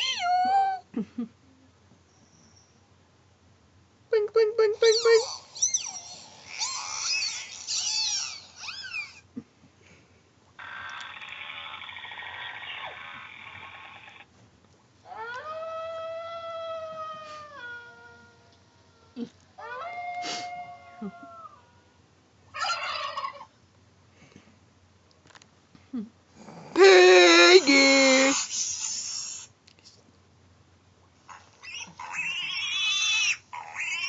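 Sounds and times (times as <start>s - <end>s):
buzzy rasping animal call: 0.0s - 0.4s, 4.8s - 9.3s, 10.6s - 14.3s, 26.8s - 29.5s, 31.3s - 34.0s.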